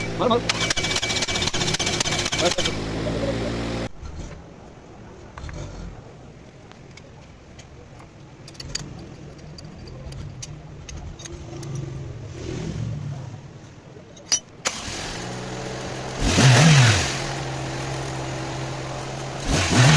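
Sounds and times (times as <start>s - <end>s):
car engine idling and revving: 0.0s - 6.7s, 14.7s - 19.9s.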